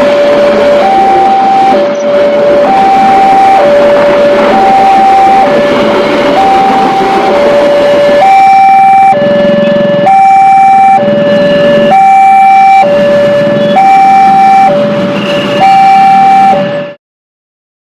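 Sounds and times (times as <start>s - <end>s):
two-tone train horn: 0.0s - 5.7s.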